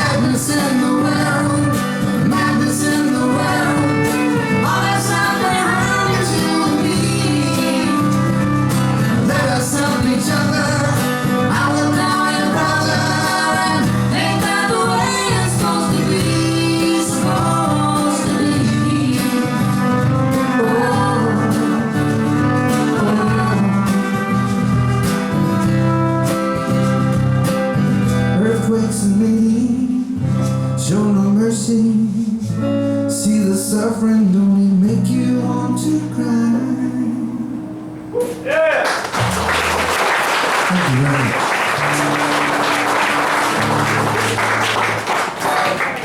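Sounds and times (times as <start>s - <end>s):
fiddle melody: 0.0s - 29.4s, 41.5s - 45.1s
strummed acoustic guitar: 0.0s - 38.5s, 39.1s - 46.0s.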